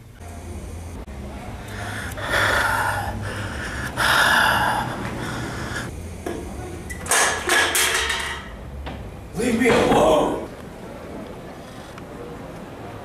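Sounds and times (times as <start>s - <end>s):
low steady hum: 0.0s - 13.0s
person gasping: 1.6s - 5.9s.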